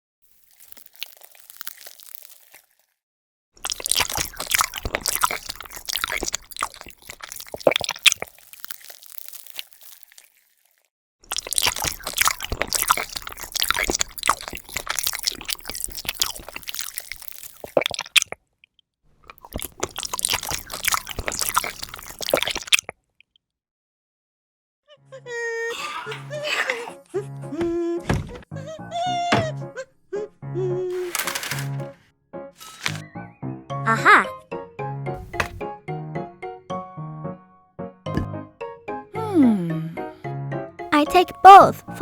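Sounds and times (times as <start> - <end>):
crisp crunching and crackling: 0.2 - 3.0, 3.6 - 18.4, 19.2 - 23.0.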